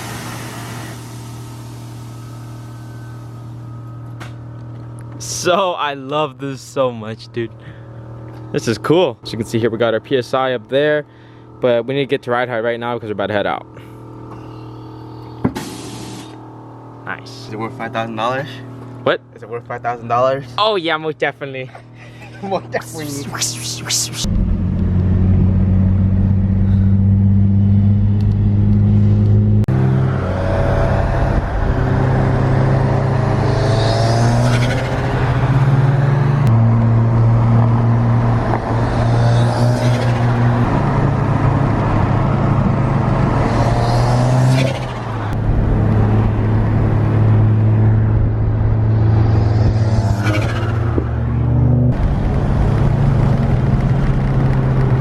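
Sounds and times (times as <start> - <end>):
blow-off valve flutter: 0.0 - 3.6
turbo spooling whine: 0.9 - 5.1, 14.1 - 15.5
turbocharged engine pulling hard: 22.9 - 55.0.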